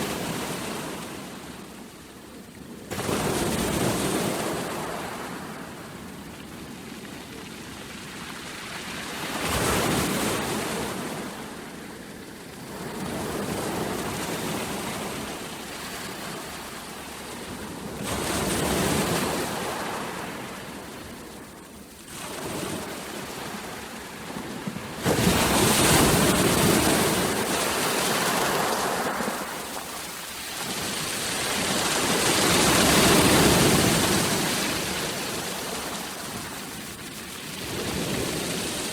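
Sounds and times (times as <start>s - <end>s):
sea waves breaking on shore: 22.1s - 38.9s.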